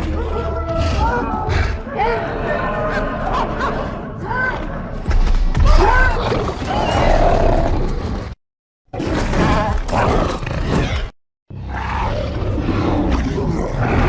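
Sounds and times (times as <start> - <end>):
creature growling roars: 9.0 - 14.0.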